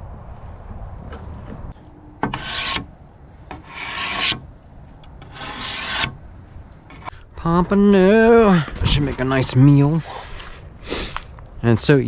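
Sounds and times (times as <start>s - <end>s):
rasping scrapes: 2.3s - 2.9s, 3.5s - 4.5s, 5.2s - 6.2s, 6.9s - 7.1s.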